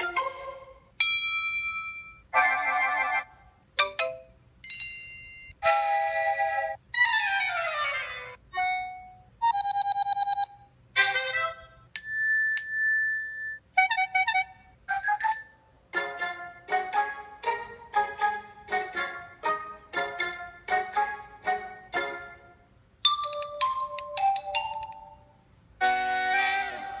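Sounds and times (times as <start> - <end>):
phone ringtones and alert tones: 9.4 - 10.7, 14.9 - 15.6, 23.1 - 25.2.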